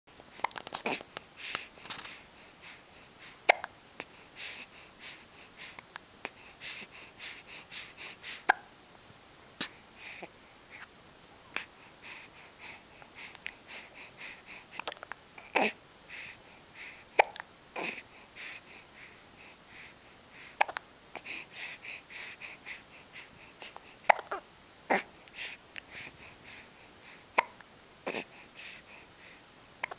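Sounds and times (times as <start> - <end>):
child hiccuping: 24.1 - 25.1.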